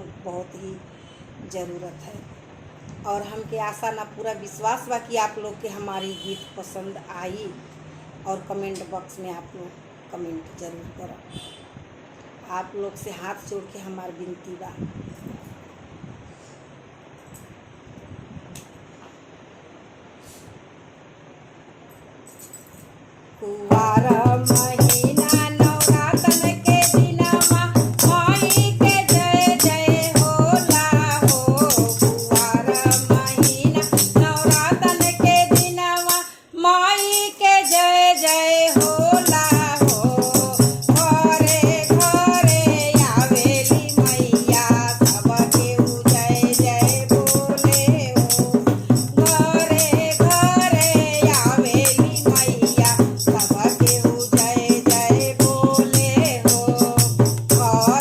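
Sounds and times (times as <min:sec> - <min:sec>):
shaker rattle: 0:21.9 - 0:23.0, 0:23.7 - 0:58.0
woman singing folk song: 0:23.4 - 0:58.0
rhythmic accompaniment: 0:23.7 - 0:36.3, 0:37.0 - 0:58.0.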